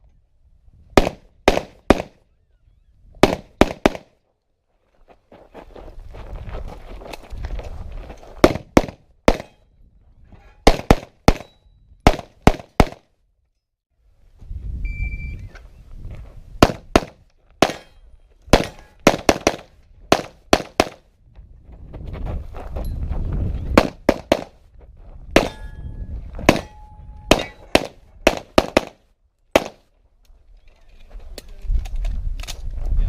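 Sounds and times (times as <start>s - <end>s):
short electronic beep: 14.8s - 15.5s
handgun shots: 16.6s - 17.9s, 26.5s - 29.0s, 29.6s - 29.8s
rumbling movement noise: 21.1s - 28.3s.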